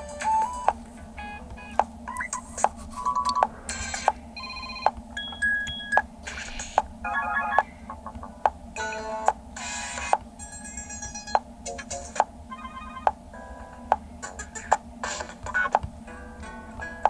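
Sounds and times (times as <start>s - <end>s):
phone ringtones beeping: 0.2s - 7.9s, 12.5s - 13.1s.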